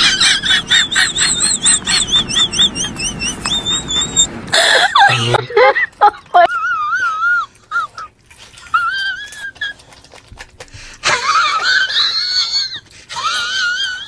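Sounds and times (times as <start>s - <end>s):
high-pitched wavering squealing cries: 1.6s - 5.4s.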